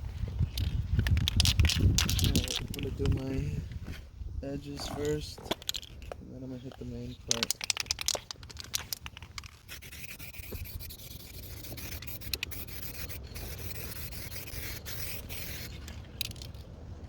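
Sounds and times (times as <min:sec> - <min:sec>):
aerosol can spraying hiss: 0:09.8 - 0:15.7.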